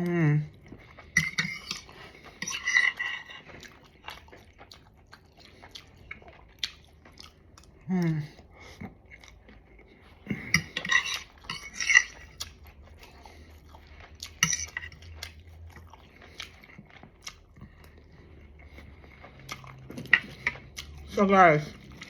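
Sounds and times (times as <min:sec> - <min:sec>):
chewing: 0:00.4 - 0:22.0
cutlery clinking on a plate: 0:10.6 - 0:12.2.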